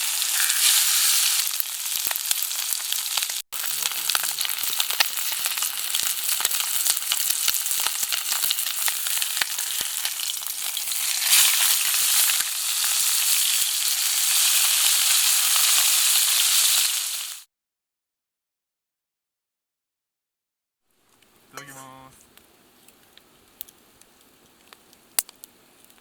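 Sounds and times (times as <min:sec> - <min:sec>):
food sizzling in a pan: 0:00.0 - 0:17.5.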